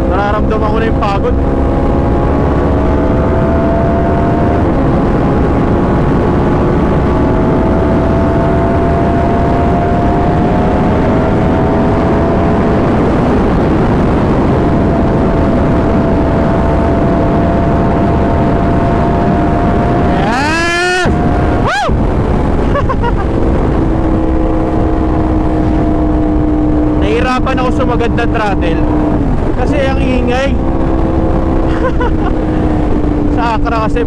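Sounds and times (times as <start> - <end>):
heavy wind noise: 0.0 - 34.0
motorcycle engine revving: 0.0 - 34.0.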